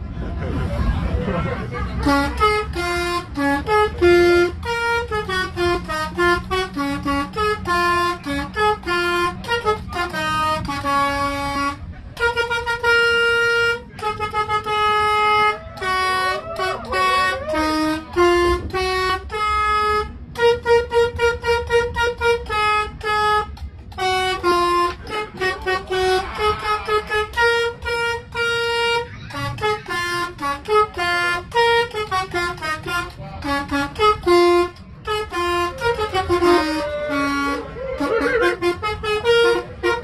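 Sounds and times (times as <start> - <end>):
low rumble: 0.0 - 12.3
multi-tone air horn melody: 1.8 - 40.0.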